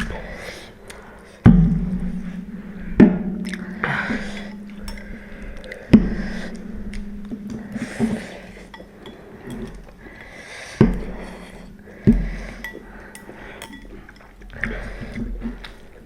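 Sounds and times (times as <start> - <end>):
utensils clinking against bowls: 3.6 - 6.6, 7.5 - 15.7.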